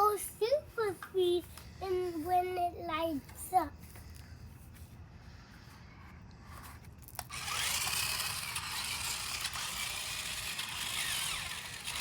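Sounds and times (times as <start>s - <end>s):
toy car electric motor whining: 6.6s - 12.0s.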